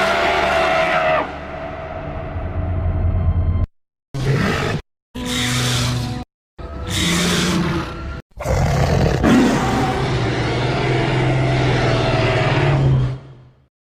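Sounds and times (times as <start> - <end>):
dinosaur roar: 6.9 - 13.5.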